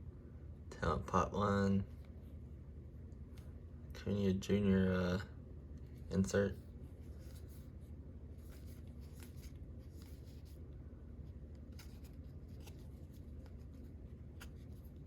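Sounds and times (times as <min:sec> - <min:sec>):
low steady hum: 0:00.0 - 0:15.0
cards flicking and sliding: 0:11.4 - 0:15.0.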